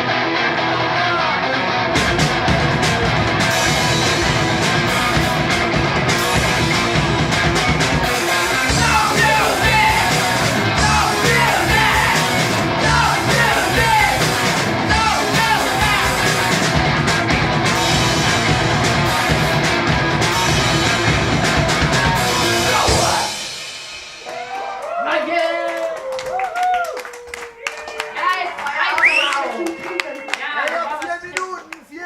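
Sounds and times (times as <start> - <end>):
live punk rock band: 0.0 - 24.2
drums and cymbals: 2.0 - 25.0
person singing and yelling: 8.4 - 16.7, 22.2 - 23.4.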